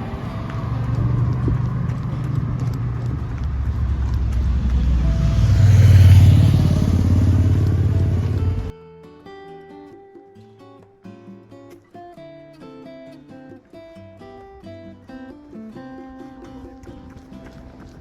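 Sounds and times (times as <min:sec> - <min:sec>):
vehicle passing by: 0:00.0 - 0:08.7.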